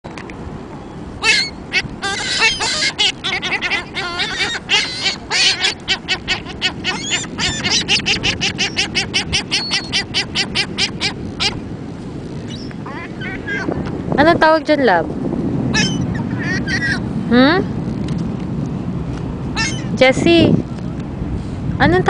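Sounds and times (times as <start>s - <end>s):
flock of birds chirping: 0.8s - 11.6s, 12.3s - 13.9s, 15.8s - 17.1s.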